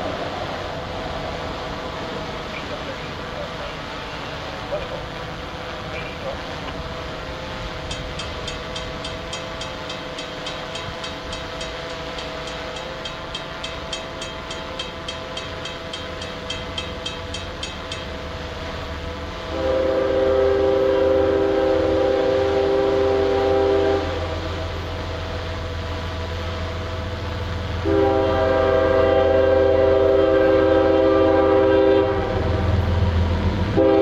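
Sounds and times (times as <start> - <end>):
freight train passing: 0.0 - 34.0
high ticks: 7.8 - 18.4
locomotive air horn blast: 19.2 - 24.7, 27.8 - 34.0.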